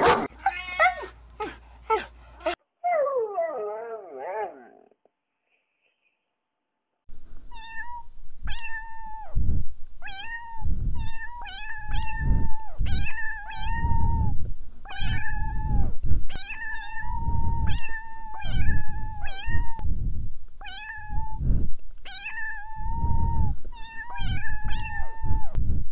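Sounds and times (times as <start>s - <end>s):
low rumble: 7.1s - 22.0s, 22.6s - 25.9s
cat meowing: 7.5s - 9.4s, 10.0s - 19.8s, 20.6s - 21.4s, 22.1s - 25.6s.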